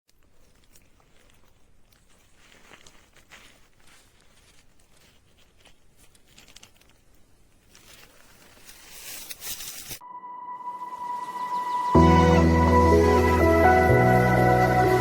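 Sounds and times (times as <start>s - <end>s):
faint rustling: 0.2s - 10.0s
music with sustained tones: 10.0s - 15.0s.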